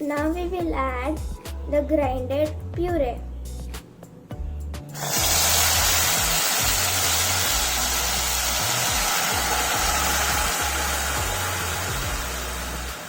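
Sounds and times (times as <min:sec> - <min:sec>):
puree sizzling in hot oil: 0:04.9 - 0:13.0.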